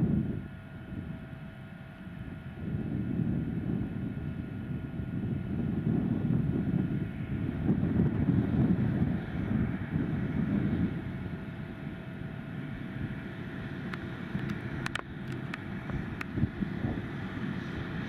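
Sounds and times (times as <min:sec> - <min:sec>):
farm machinery engine hum: 0:00.0 - 0:18.0
wind buffeting microphone: 0:00.0 - 0:18.0
sharp clicks: 0:13.9 - 0:16.3.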